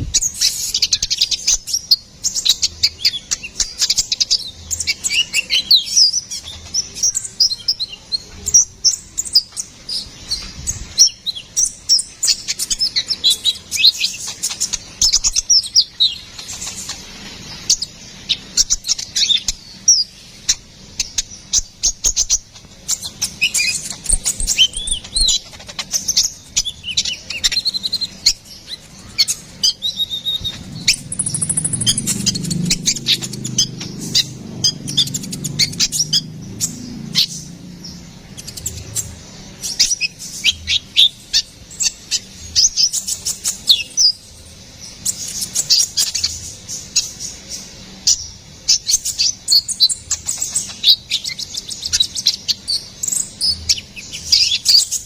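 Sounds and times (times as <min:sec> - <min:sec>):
bird twittering song: 0:00.0 - 0:55.0
low rumble: 0:30.2 - 0:39.3.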